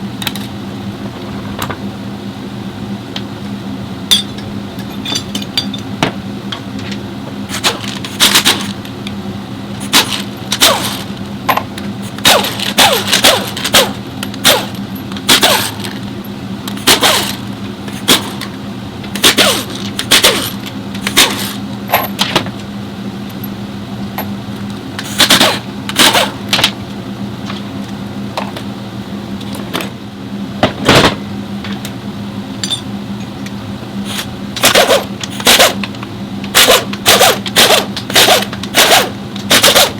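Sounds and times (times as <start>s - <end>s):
low hum: 0.0s - 39.5s
sharp metallic clanks: 4.1s - 5.9s, 32.6s - 33.3s.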